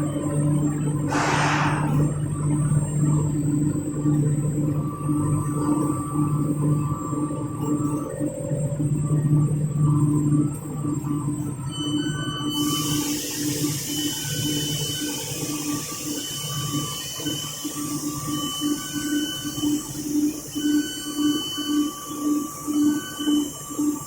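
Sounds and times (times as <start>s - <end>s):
low pulsing machine hum: 0.0s - 15.7s
machinery hissing: 1.1s - 2.3s.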